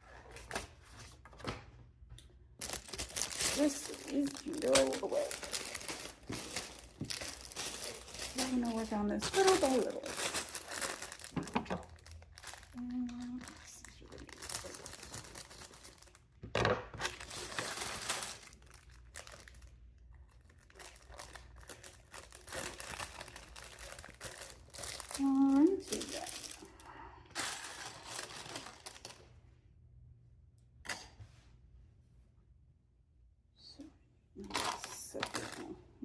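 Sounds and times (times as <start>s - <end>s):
plastic bag crinkling and tearing: 2.6s - 16.3s, 16.9s - 29.2s, 34.4s - 35.8s.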